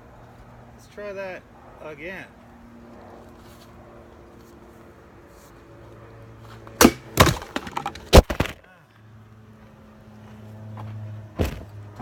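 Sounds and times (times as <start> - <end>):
sword striking plastic bottle: 6.8 - 8.6
knocks and clatter: 7.2 - 8.6.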